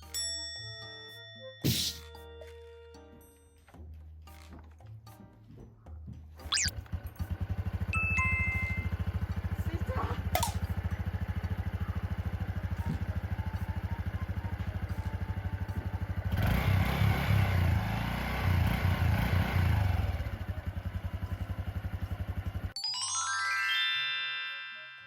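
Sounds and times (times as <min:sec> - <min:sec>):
motorcycle engine idling and revving: 0:06.6 - 0:22.8
rising chime-like music notes: 0:08.0 - 0:09.4, 0:22.8 - 0:25.0.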